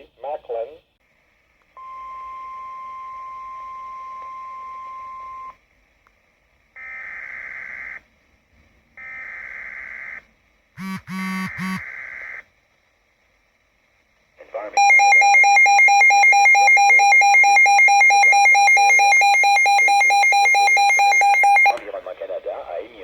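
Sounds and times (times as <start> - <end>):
harsh digital data bursts: 10.8 - 11.9
lower pitched beeping: 14.8 - 21.8.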